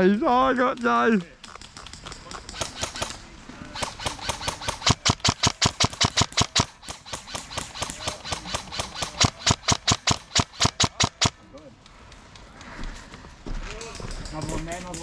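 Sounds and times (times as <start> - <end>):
airsoft gun firing: 2.0 - 11.4.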